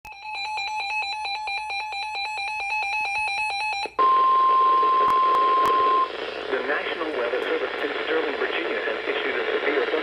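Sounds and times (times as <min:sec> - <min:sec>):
loud steady high alarm tone: 0:00.1 - 0:06.5.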